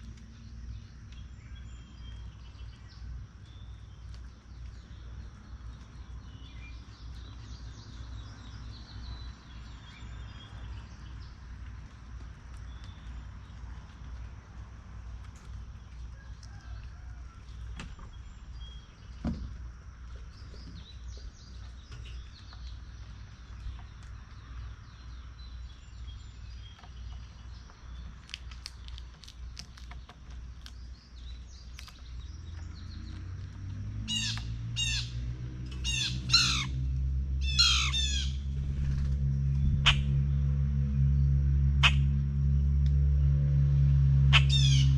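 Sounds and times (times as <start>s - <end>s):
birds chirping: 0.0s - 42.2s, 44.2s - 44.9s
low humming drone: 30.6s - 44.9s
sharp downward-sweeping bird calls: 34.1s - 35.2s, 35.8s - 36.8s, 37.4s - 39.0s, 39.6s - 40.4s, 41.8s - 42.2s, 44.2s - 44.9s.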